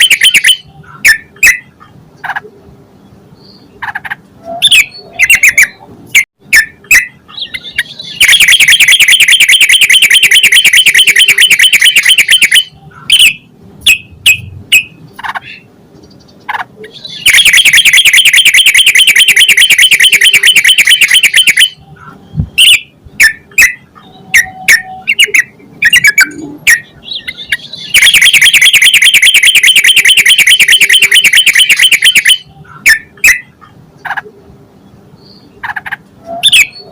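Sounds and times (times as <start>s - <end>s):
rapid bird chattering: 6.5s - 34.2s
bird chirps: 6.6s - 33.5s, 34.8s - 36.9s.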